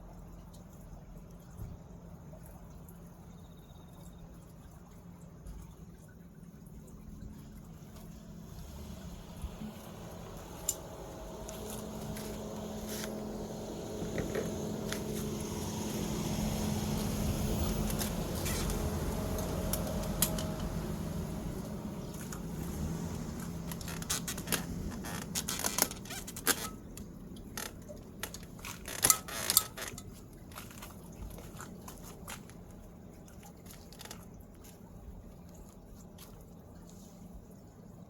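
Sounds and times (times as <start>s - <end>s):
low steady hum: 0.0s - 38.0s.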